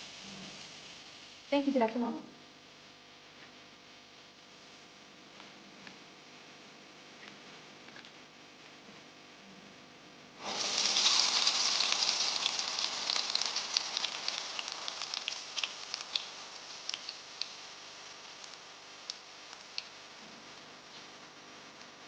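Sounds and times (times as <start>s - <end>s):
food sizzling in hot oil: 10.4s - 20.2s.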